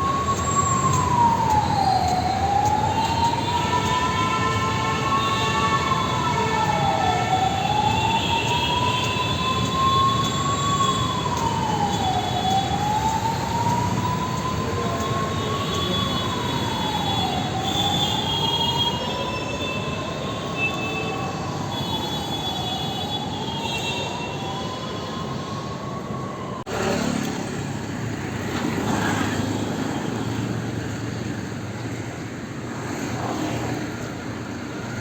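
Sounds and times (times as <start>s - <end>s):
emergency vehicle siren wailing: 0.0s - 35.0s
street traffic hiss: 0.0s - 35.0s.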